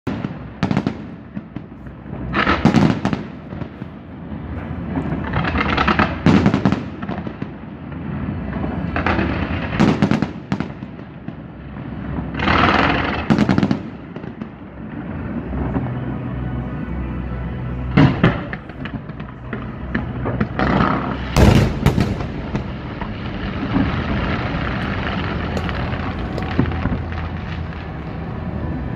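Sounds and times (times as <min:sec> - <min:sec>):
firework pops and crackle: 0:00.1 - 0:03.8, 0:04.9 - 0:07.6, 0:08.5 - 0:11.5, 0:12.2 - 0:14.6, 0:18.0 - 0:27.9.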